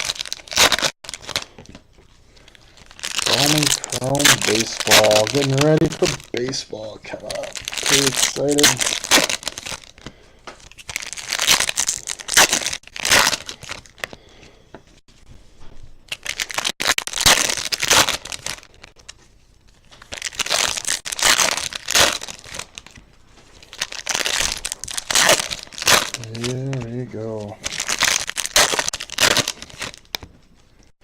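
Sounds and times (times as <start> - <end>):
wrappers crinkling and tearing: 0.0 - 14.4, 16.1 - 30.9.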